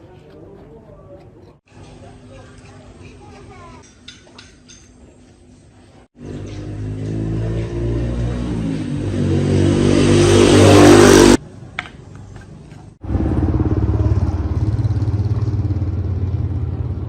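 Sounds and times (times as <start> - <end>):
motorcycle engine revving: 6.2 - 11.4, 13.0 - 17.0.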